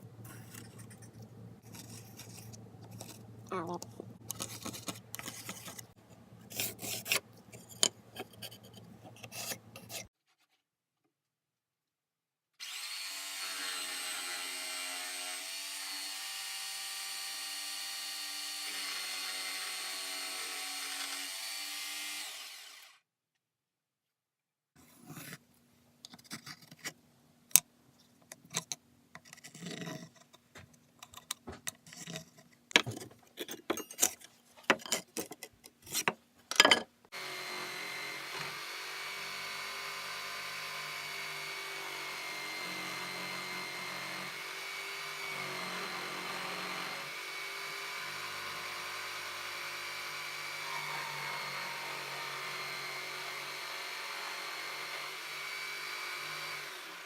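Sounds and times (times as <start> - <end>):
tools and wood knocking: 0.3 - 10.1, 27.6 - 40.2
small power tool whining: 12.6 - 23.0, 37.1 - 57.0.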